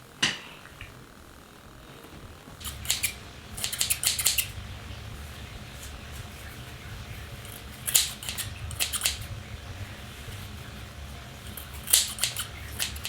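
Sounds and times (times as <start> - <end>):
faint low hum: 0.0 - 13.0
scissors snipping hair: 2.6 - 4.6, 7.4 - 9.3, 11.4 - 13.0.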